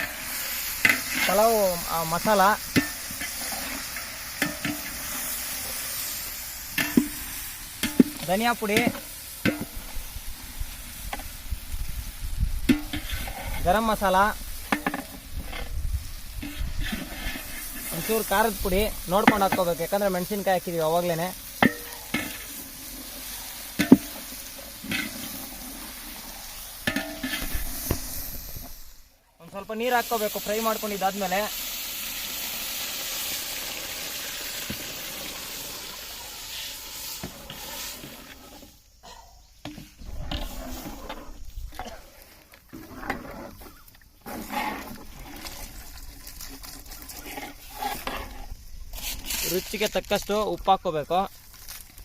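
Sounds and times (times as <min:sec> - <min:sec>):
food sizzling in a pot: 0:00.0 - 0:52.0
ladle clanking against pot: 0:26.9 - 0:27.5
water poured into cooking pot: 0:30.1 - 0:37.2, 0:44.8 - 0:47.7.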